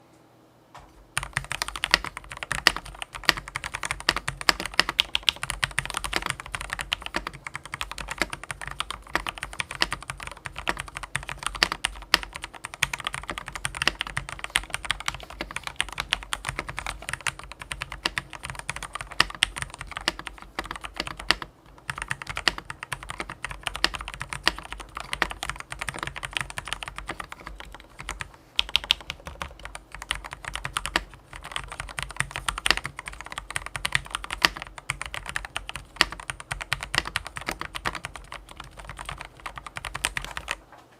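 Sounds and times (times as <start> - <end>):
mechanical keyboard typing: 1.2 - 40.6.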